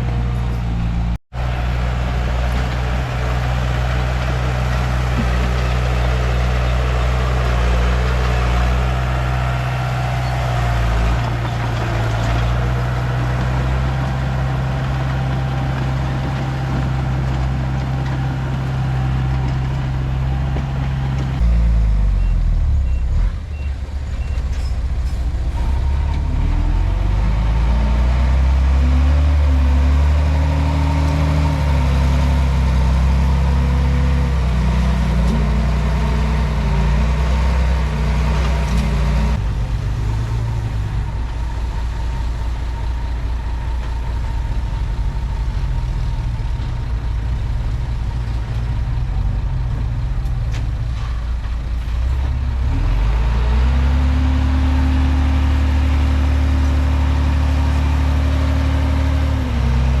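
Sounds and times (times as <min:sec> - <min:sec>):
bulldozer diesel engine under load: 0:00.0 - 1:00.0.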